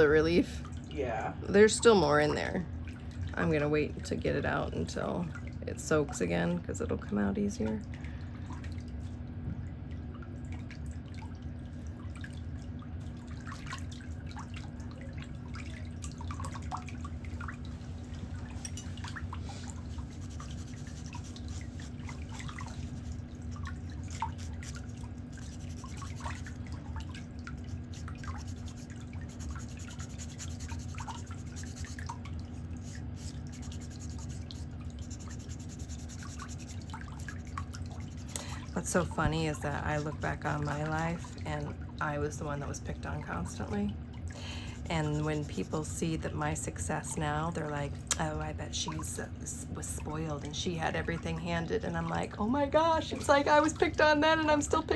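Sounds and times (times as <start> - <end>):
low hum: 6.6 - 47.7
water dripping: 7.8 - 42.0.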